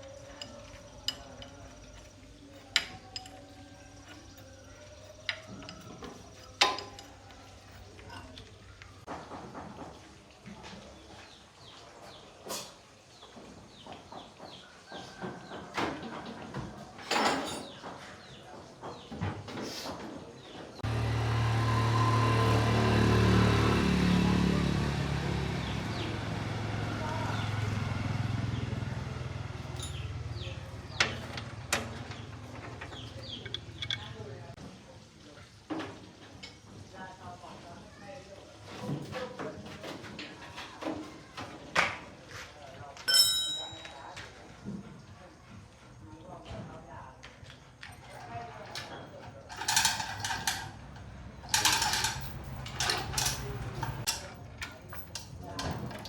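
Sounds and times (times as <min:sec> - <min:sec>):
metal tools clinking and clattering: 0:00.0 - 0:08.7, 0:17.0 - 0:17.8, 0:29.6 - 0:34.4, 0:43.1 - 0:44.2, 0:48.0 - 0:56.0
small engine running: 0:20.8 - 0:32.6.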